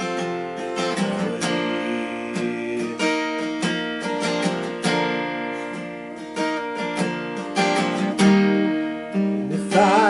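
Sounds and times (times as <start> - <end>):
acoustic guitar chords: 0.0 - 10.0.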